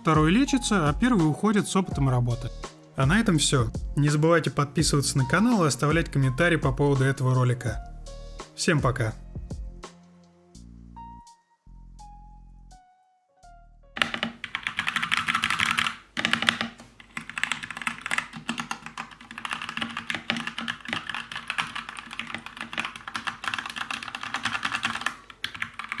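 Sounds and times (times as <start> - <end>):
mechanical keyboard typing: 14.0 - 26.0.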